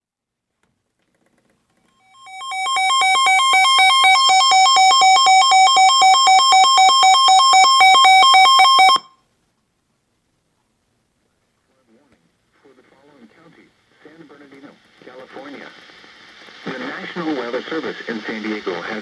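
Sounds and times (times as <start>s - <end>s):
electronic alert tone: 2.1s - 9.1s.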